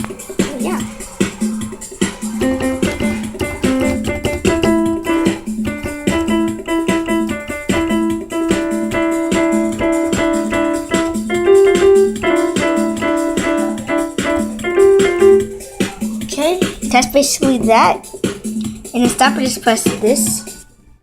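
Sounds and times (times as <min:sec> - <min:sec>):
keyboard chords: 0:00.0 - 0:20.5
drum machine beat: 0:00.0 - 0:20.6.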